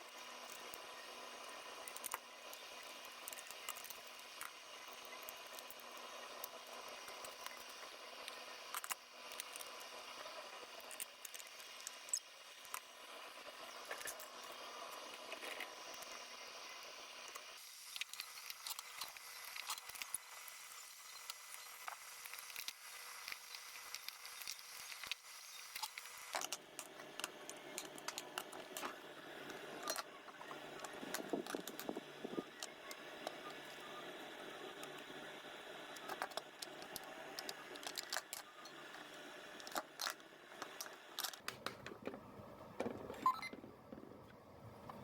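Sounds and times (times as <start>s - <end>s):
small clicks and taps: 39.6s - 42.2s.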